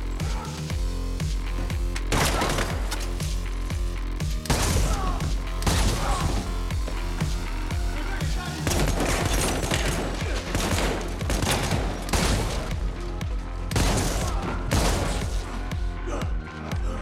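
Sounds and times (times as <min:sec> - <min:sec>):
gunshots: 0:02.1 - 0:03.0, 0:04.4 - 0:06.7, 0:08.2 - 0:13.0, 0:13.6 - 0:15.6
shotgun blasts: 0:05.6 - 0:06.4, 0:08.6 - 0:12.8, 0:13.7 - 0:15.4.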